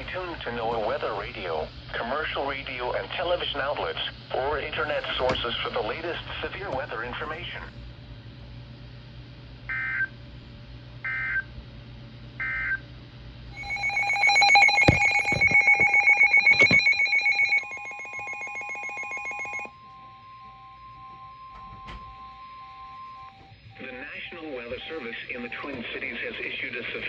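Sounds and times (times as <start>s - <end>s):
steady alert tone: 13.6s - 19.7s
pulsing electronic alarm: 13.6s - 26.4s.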